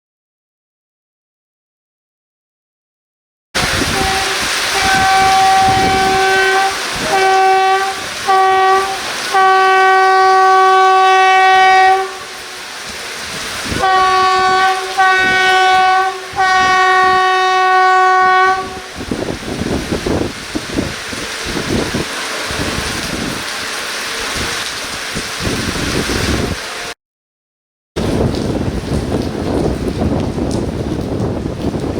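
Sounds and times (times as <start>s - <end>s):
locomotive horn blasts: 3.6s - 12.7s, 13.7s - 19.1s
rolling train rumble: 3.6s - 26.9s, 28.0s - 31.9s.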